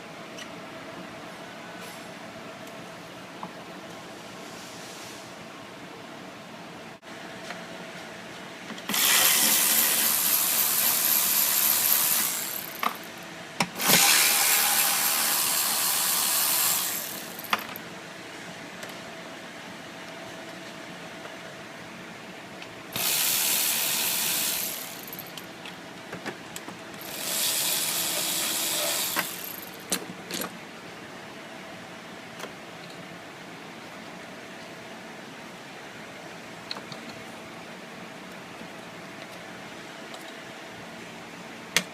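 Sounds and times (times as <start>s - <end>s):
pneumatic tool hissing: 8.9s - 13.0s, 13.8s - 17.8s, 22.9s - 25.3s, 27.0s - 29.8s.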